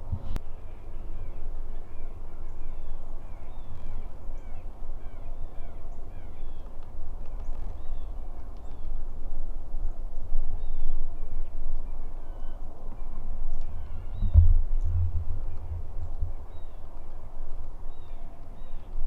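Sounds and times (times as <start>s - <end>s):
birds chirping: 12.2s - 19.0s
steady low rumble: 13.2s - 19.0s.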